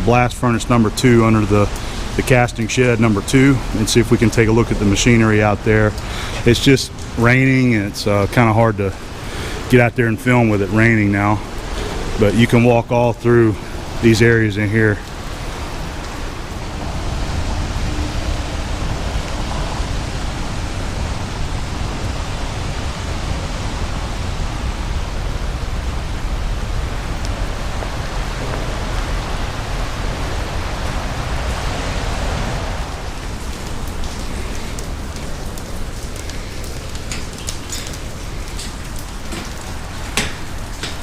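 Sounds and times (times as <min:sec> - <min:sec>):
steady rain falling: 0:00.0 - 0:41.0
low rumble: 0:24.0 - 0:31.3.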